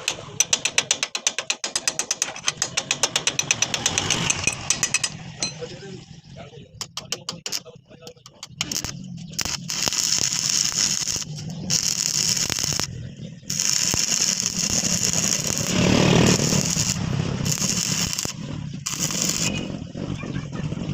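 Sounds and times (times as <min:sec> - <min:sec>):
arc welding sizzling crackle: 0:08.4 - 0:12.9, 0:13.5 - 0:19.8.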